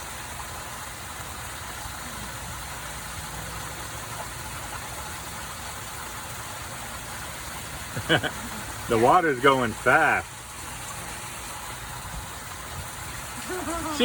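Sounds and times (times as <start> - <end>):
rainwater rushing into a drain: 0.0 - 14.0.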